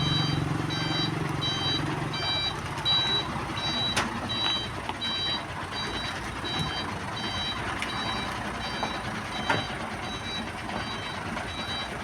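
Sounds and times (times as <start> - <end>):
reversing alarm beeping: 0.0 - 12.0
truck engine running: 0.0 - 12.0.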